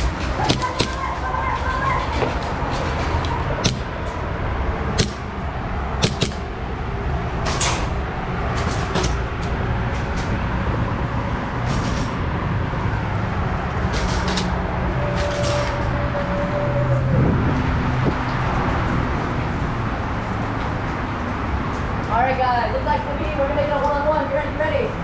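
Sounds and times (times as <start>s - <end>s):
wind noise: 0.0s - 22.1s
sharp clicks and pops: 3.6s - 4.0s, 5.0s - 5.3s, 6.0s - 6.5s.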